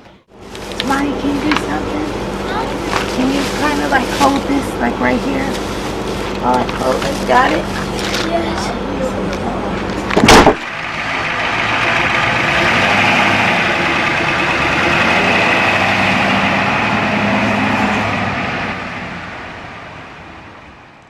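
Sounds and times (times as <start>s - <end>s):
engine running: 0.0s - 21.0s
loud sharp knock: 10.2s - 10.7s.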